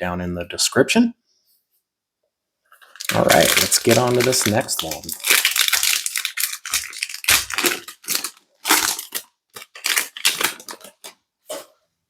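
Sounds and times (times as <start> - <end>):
plastic wrapper crinkling and tearing: 2.8 - 11.6.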